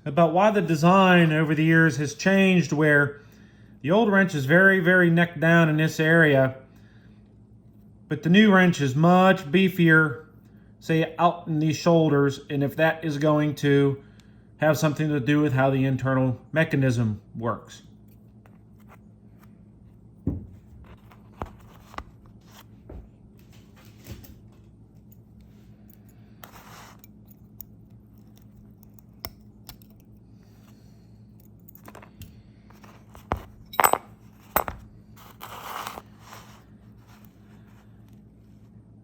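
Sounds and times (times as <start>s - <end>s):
metal parts clicking and clinking: 31.3s - 32.3s, 33.4s - 34.8s.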